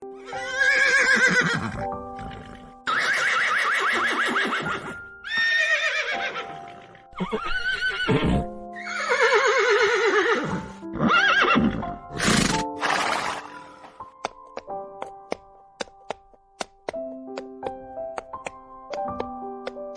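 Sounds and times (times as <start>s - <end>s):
background music with held notes: 0.0s - 19.9s
horses neighing: 0.2s - 14.0s.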